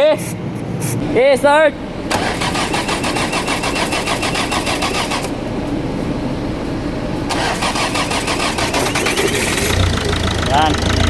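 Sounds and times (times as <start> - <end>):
engine cranking with starter motor: 2.1 - 5.4, 7.3 - 11.0.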